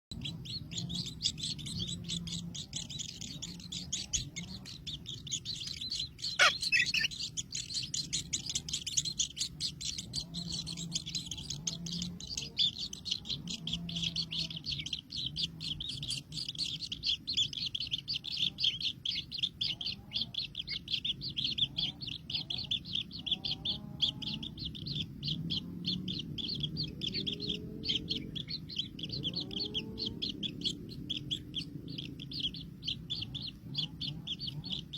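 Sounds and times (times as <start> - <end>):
baby birds chirping: 0.0 - 34.9.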